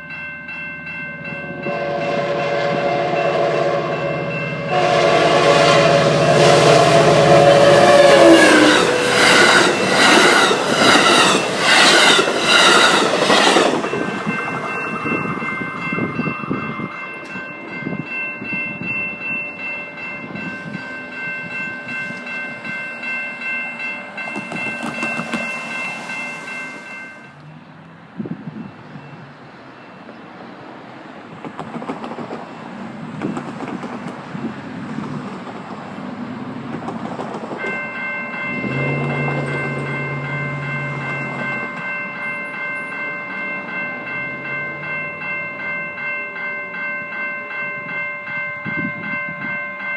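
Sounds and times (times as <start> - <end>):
train wheels clattering: 7.5 - 16.0, 23.7 - 26.8, 31.3 - 44.8
high-pitched ringing: 37.6 - 49.9.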